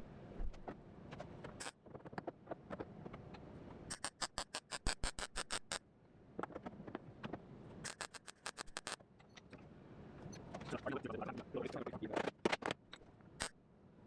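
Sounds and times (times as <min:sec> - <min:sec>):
welder crackling zaps: 0:07.9 - 0:09.0.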